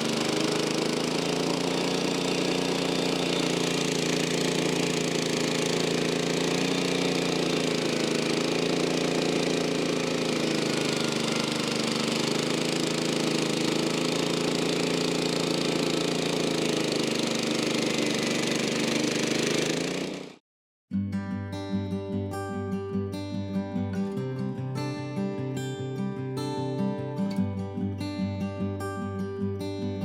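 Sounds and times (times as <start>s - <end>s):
engine running steadily: 0.0s - 20.4s.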